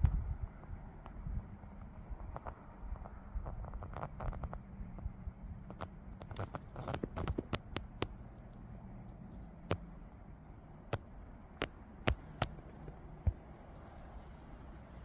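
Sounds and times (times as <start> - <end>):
low steady hum: 0.0 - 15.0
sharp clicks and taps: 5.7 - 9.9, 10.9 - 13.4.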